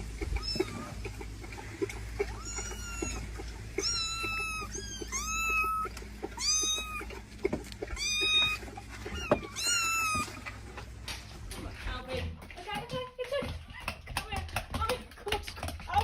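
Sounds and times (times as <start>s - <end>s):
cat meowing: 0.3s - 1.0s, 2.2s - 7.2s, 7.8s - 10.4s.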